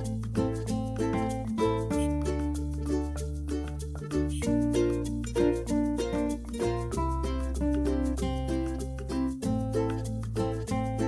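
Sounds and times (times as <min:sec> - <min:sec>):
plucked string tune: 0:00.0 - 0:11.0
steady bass: 0:00.0 - 0:11.0.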